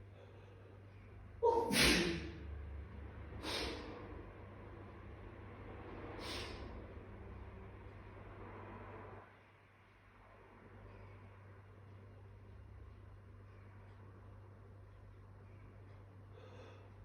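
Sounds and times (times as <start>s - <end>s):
person sneezing loudly: 1.4s - 2.4s
soft bursts of breath: 6.1s - 7.0s.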